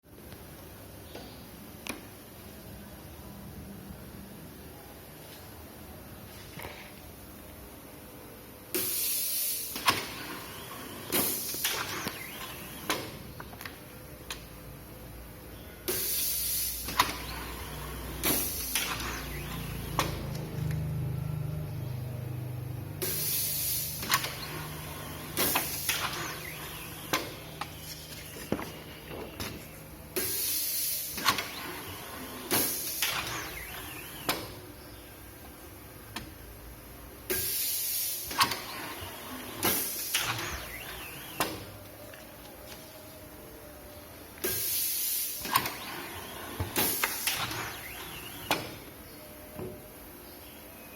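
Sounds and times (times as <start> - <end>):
compressed air hissing: 15.9 - 19.0, 23.0 - 27.4, 30.2 - 31.8, 37.3 - 38.4, 44.4 - 48.7
air cylinder hisses: 23.0 - 24.0, 30.2 - 31.3, 44.4 - 45.6.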